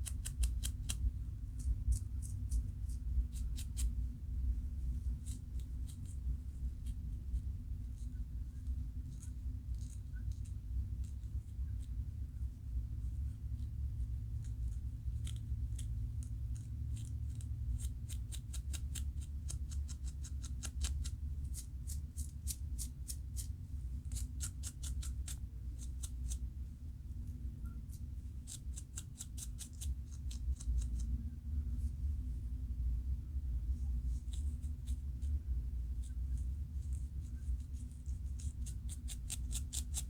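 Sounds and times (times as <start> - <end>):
steady low hum: 0.0 - 40.0
fingernails scratching scalp: 28.3 - 31.1, 36.0 - 40.0.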